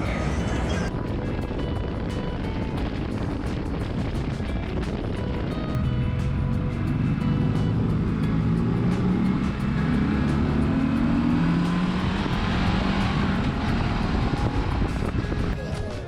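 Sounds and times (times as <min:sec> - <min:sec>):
motorcycle engine running: 0:00.0 - 0:16.0
wind and road noise: 0:00.0 - 0:16.0.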